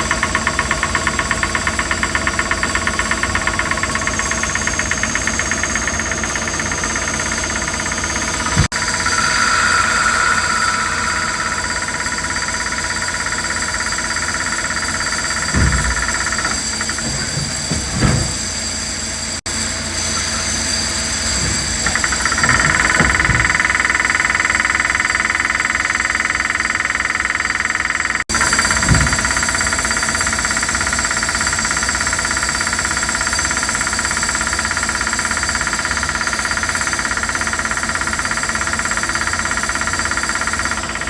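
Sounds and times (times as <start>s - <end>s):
lathe mechanical drone: 0.7s - 30.4s
high machine whine: 3.2s - 26.1s
dull knocks: 15.2s - 18.7s.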